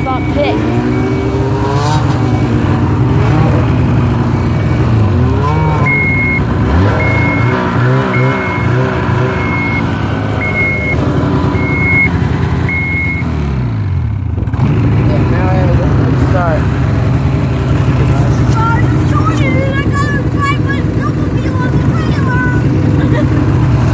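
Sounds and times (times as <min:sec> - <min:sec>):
reverse warning beeper: 0:00.0 - 0:13.4
snowmobile engine revving: 0:00.0 - 0:23.9.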